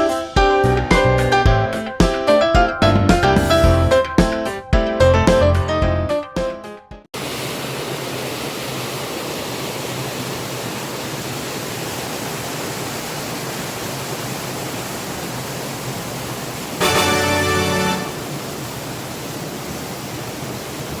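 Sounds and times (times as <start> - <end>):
water rushing: 7.2 - 21.0.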